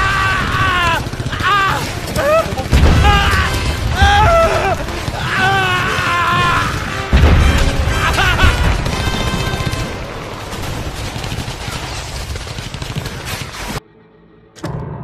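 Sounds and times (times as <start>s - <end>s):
gunfire: 0.0s - 13.8s
music: 2.2s - 11.1s, 13.8s - 15.0s
explosions: 2.4s - 13.4s
heavy boom: 7.1s - 9.4s.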